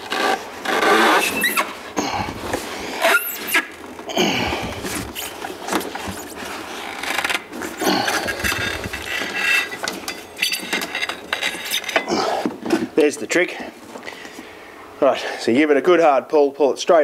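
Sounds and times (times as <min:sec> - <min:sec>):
rubber belt scraping: 0:00.0 - 0:12.4.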